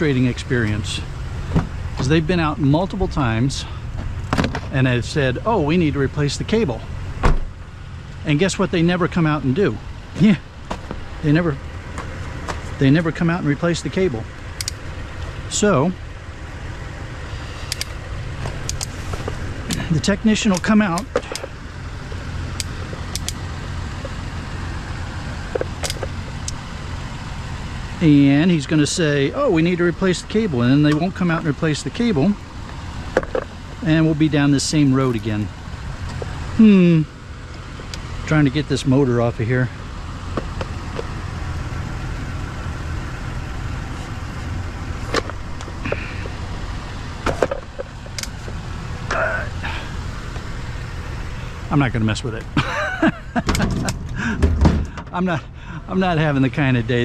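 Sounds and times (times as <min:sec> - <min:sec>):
vehicle engine humming: 0:00.0 - 0:57.0
sharp clicks: 0:14.6 - 0:15.3, 0:17.6 - 0:19.0, 0:22.5 - 0:23.5, 0:25.6 - 0:26.6, 0:47.8 - 0:48.4.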